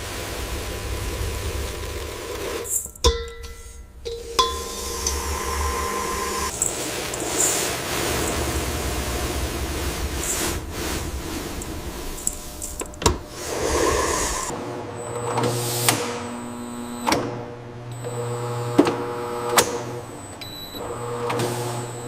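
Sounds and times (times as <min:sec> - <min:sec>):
hissing: 0:00.0 - 0:14.5
machinery humming: 0:00.0 - 0:22.0.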